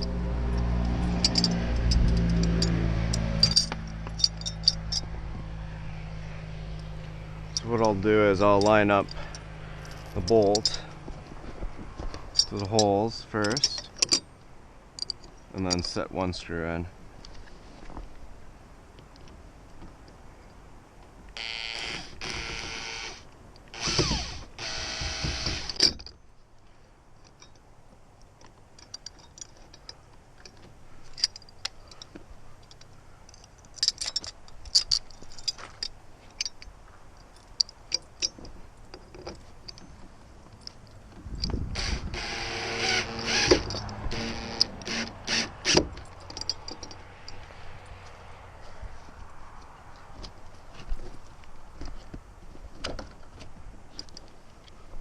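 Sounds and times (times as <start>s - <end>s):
handling clicks and knocks: 0.0s - 5.5s, 6.6s - 16.1s, 27.2s - 48.2s, 49.0s - 55.0s
drill motor whine: 21.4s - 23.2s, 23.8s - 25.8s, 41.8s - 45.5s.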